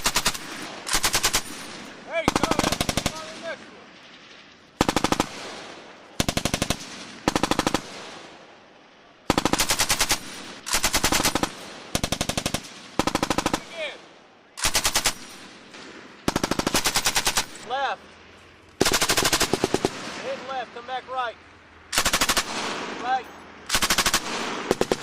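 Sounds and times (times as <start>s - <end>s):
machine gun firing bursts: 0.0s - 3.6s, 4.8s - 8.2s, 9.3s - 14.0s, 14.6s - 15.5s, 16.2s - 17.6s, 18.8s - 20.4s, 21.9s - 23.1s, 23.7s - 25.0s.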